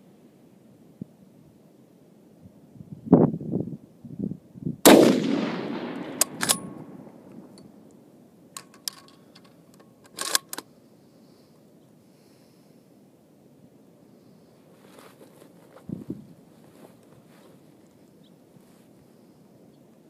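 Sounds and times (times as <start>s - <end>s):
rifle shot: 4.8s - 7.6s
rifle bolt metallic clicks: 4.9s - 7.7s, 8.6s - 10.7s.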